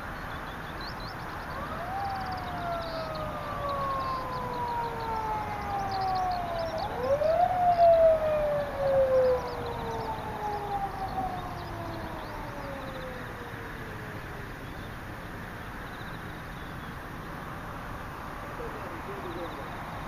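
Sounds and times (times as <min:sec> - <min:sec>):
small birds chirping: 0:00.0 - 0:20.0
siren wailing: 0:01.4 - 0:14.4.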